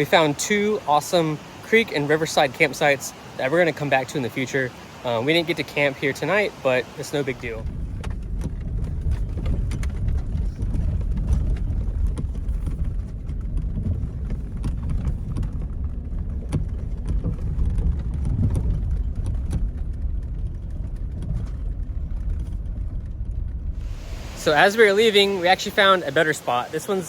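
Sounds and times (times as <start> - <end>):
vehicle rumbling on rough road: 0.0 - 27.0
knocks and rattles: 7.6 - 23.8.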